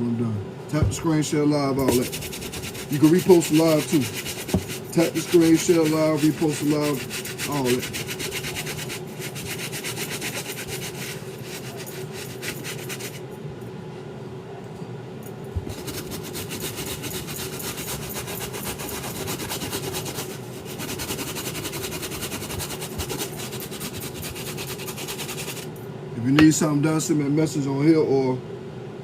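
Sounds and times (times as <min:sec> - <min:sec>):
hand rubbing sneaker: 0:01.8 - 0:13.2, 0:15.6 - 0:25.7.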